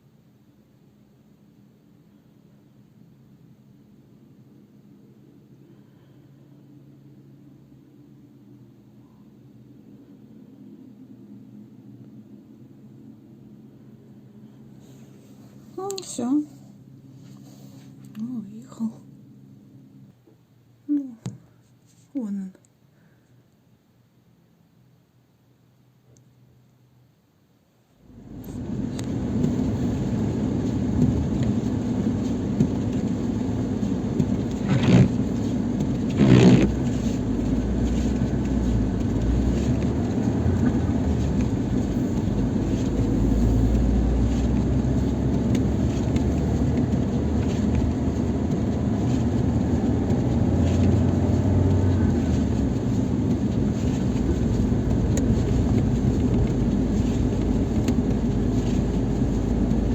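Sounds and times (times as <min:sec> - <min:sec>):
car engine running: 0:28.0 - 0:59.9.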